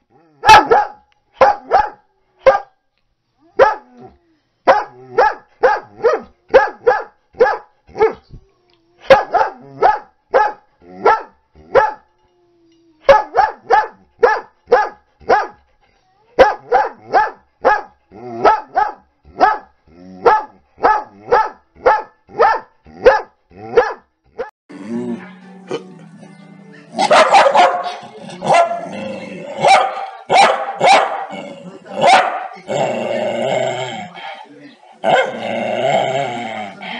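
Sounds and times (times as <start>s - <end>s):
dog barking angrily: 0.4s - 2.7s, 4.7s - 8.2s, 9.1s - 12.0s, 13.1s - 15.6s, 16.4s - 24.0s, 27.0s - 34.3s, 35.0s - 36.9s.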